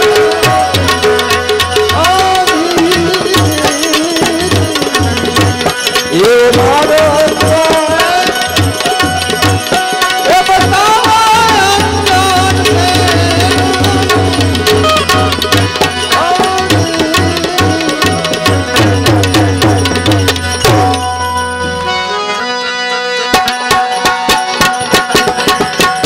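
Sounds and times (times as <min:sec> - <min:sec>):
tabla drumming: 0:00.0 - 0:22.5, 0:23.3 - 0:26.0
gliding instrumental melody: 0:18.2 - 0:24.9.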